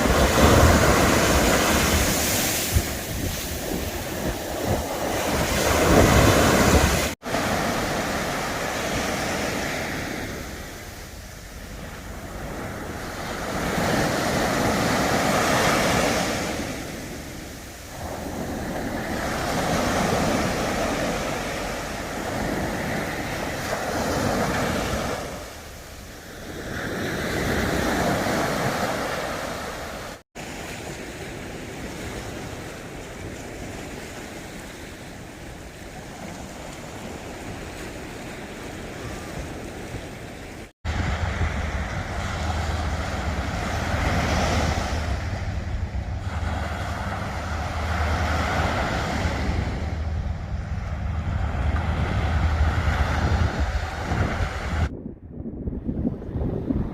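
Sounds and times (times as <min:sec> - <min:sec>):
sea waves washing in: 0:00.0 - 0:54.9
wind buffeting microphone: 0:00.0 - 0:56.9
steady low hum: 0:40.9 - 0:54.9.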